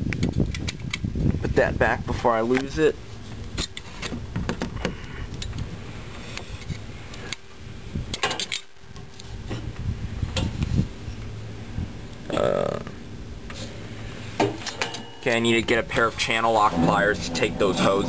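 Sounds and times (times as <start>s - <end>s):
steady low hum: 0.0s - 18.0s
clicks and knocks of parts: 8.1s - 8.8s.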